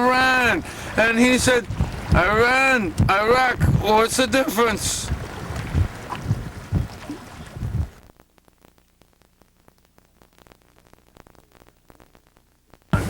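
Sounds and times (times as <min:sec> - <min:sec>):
wind buffeting microphone: 0:00.0 - 0:08.0.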